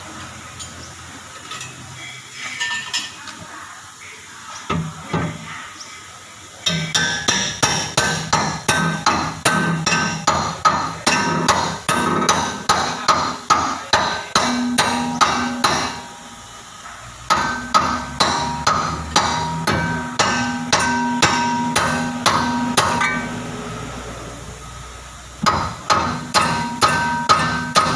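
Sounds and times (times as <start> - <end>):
hammer striking metal: 6.7 - 16.2, 17.3 - 23.4, 25.4 - 27.9.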